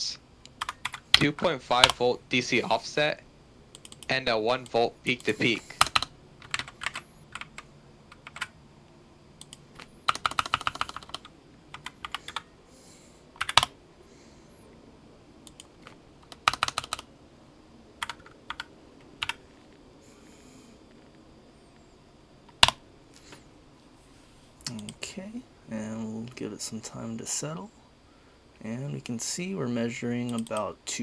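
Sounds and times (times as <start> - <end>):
computer keyboard typing: 0.5 - 2.8, 3.7 - 8.5, 9.4 - 12.5, 13.4 - 13.7, 15.4 - 17.1, 18.0 - 19.6, 22.5 - 23.4, 30.2 - 30.7.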